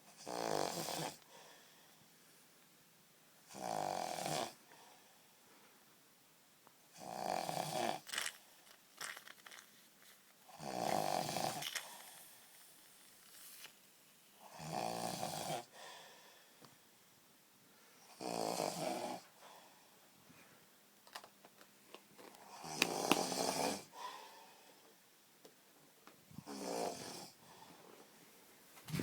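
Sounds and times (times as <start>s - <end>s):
person snoring: 10.5s - 12.2s.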